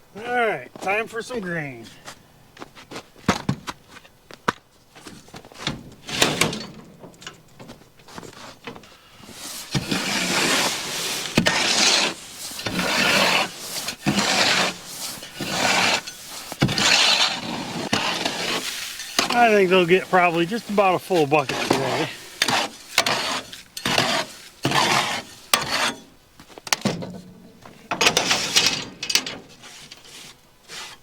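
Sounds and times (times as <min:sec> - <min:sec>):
bucket knocks and clatter: 0:26.6 - 0:29.4.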